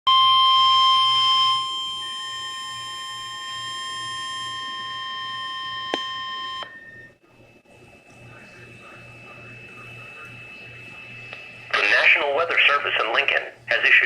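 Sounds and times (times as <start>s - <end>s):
shrill warning alarm tone: 0.1s - 7.2s.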